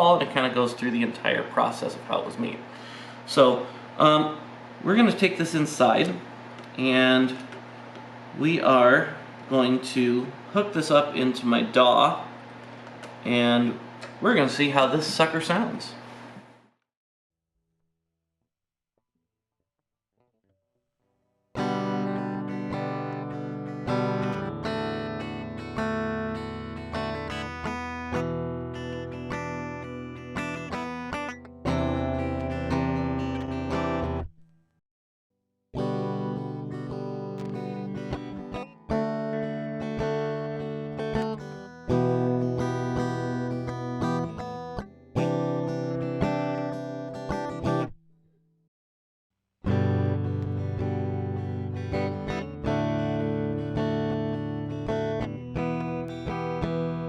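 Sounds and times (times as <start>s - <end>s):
clean electric guitar chords: 21.6s - 34.3s, 35.8s - 47.9s, 49.7s - 57.0s.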